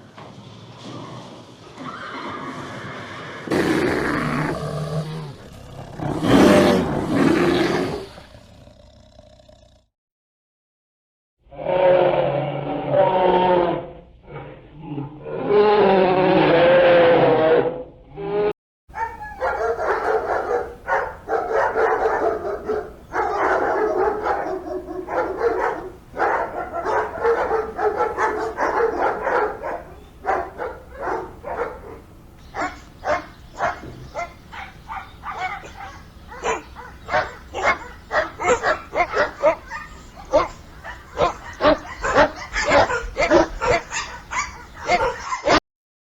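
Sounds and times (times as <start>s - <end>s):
dog whining: 18.9s - 31.7s, 32.6s - 45.6s
dog yapping and barking: 18.9s - 45.6s.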